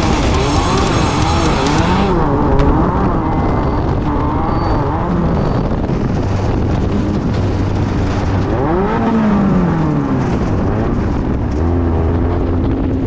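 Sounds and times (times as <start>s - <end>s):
race car engine revving: 0.0s - 13.0s.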